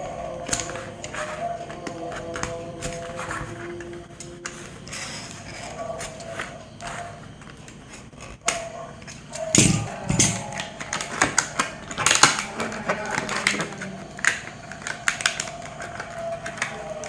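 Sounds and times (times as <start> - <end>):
packaging clicks and rustles: 0.0 - 17.0.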